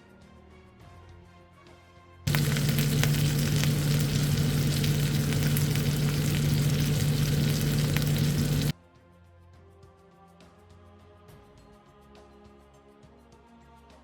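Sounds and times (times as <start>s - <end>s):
fish sizzling in a pan: 2.3s - 8.7s.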